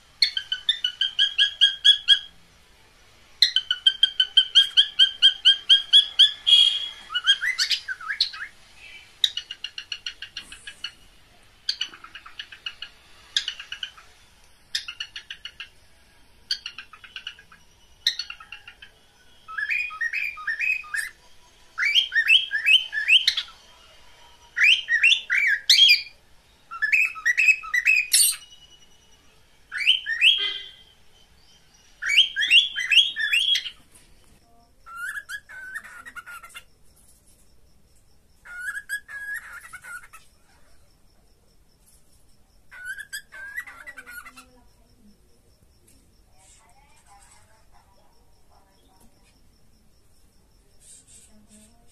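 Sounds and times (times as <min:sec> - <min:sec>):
cockatiels chirping: 0:00.2 - 0:02.4, 0:03.4 - 0:11.0, 0:11.7 - 0:15.8, 0:16.5 - 0:21.2, 0:21.8 - 0:23.6, 0:24.6 - 0:28.5, 0:29.7 - 0:30.8, 0:32.0 - 0:33.8, 0:34.9 - 0:36.7, 0:38.4 - 0:40.8, 0:42.7 - 0:44.6.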